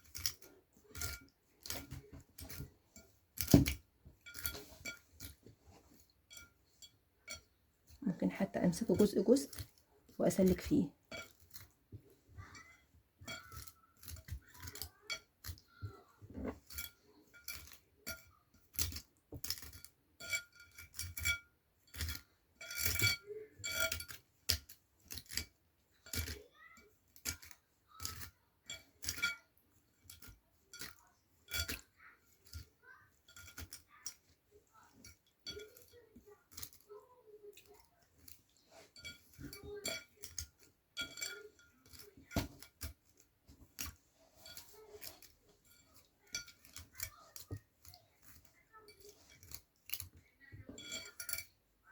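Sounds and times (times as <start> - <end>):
faint clinks: 25.0 - 51.9.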